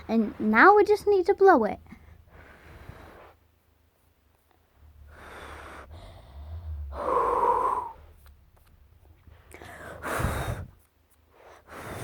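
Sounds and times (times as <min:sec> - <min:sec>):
child blowing breaths: 0:05.0 - 0:08.2, 0:09.4 - 0:12.0.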